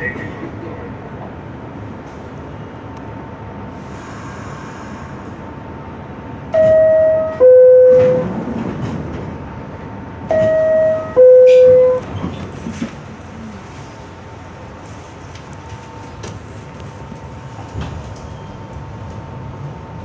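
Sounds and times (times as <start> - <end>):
subway car hum: 0.0 - 20.0
two-note door chime: 6.6 - 8.2, 10.3 - 12.0.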